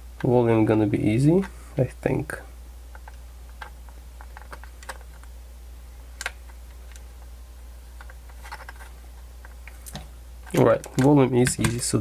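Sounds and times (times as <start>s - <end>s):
steady low hum: 0.0s - 12.0s
plastic parts clicking: 2.9s - 5.3s, 8.0s - 12.0s.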